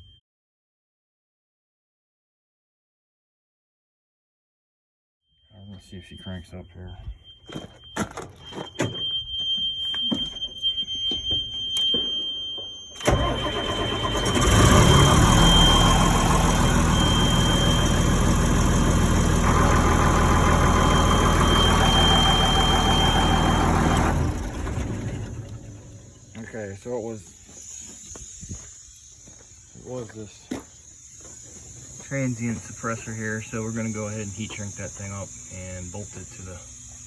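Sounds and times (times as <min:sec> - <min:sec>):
diesel engine cranking and running: 0:12.9 - 0:26.9.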